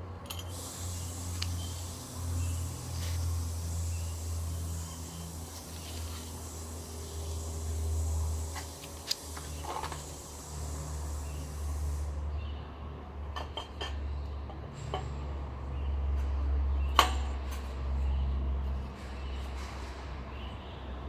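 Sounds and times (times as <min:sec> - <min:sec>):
steady low hum: 0:00.0 - 0:12.4.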